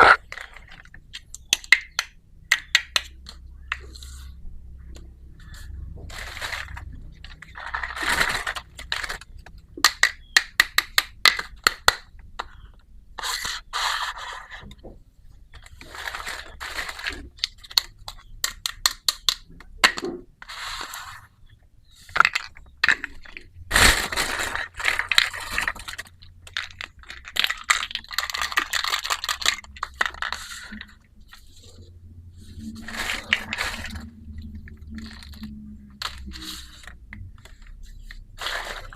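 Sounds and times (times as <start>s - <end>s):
packaging rustling and scraping: 0.0s - 1.1s, 5.4s - 9.6s, 13.2s - 14.8s, 15.5s - 17.8s, 20.4s - 38.9s.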